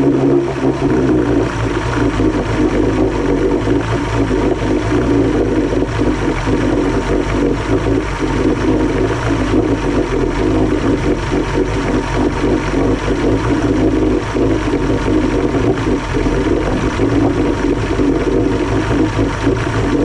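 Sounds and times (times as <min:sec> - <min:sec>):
outboard motor running: 0:00.0 - 0:20.0.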